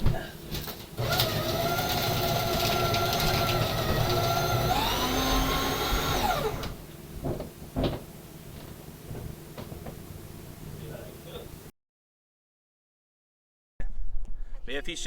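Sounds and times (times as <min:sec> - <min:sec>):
small electric motor whining: 0:01.0 - 0:06.8.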